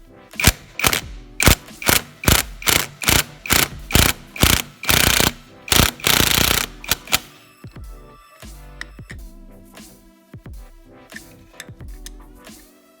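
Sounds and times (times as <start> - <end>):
ratchet wrench clicking: 0.4 - 7.4.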